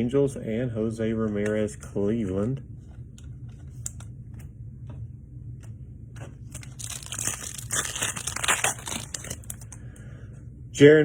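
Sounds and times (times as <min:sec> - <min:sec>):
crinkling card packaging: 0:06.2 - 0:10.0.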